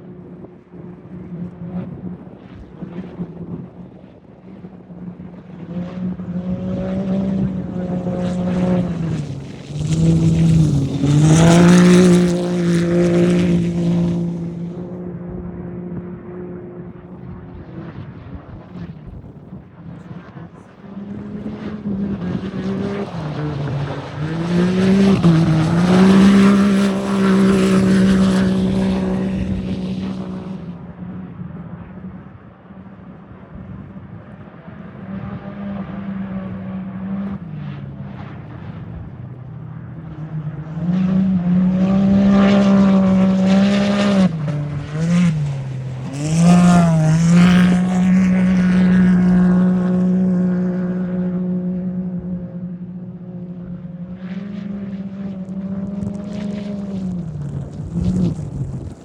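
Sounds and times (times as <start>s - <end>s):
off-road engines running hard: 0.0s - 59.0s.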